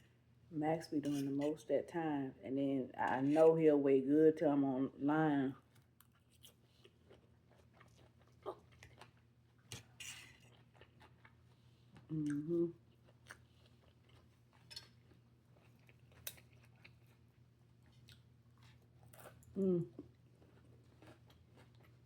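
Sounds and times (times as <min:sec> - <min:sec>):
person chewing and crunching food: 0:05.7 - 0:22.0
person humming: 0:12.1 - 0:12.8, 0:19.6 - 0:19.9.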